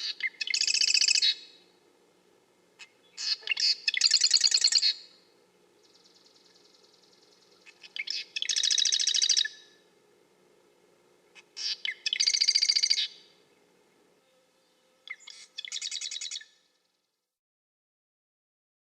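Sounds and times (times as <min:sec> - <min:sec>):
wren singing rattling trill: 0:05.8 - 0:09.6.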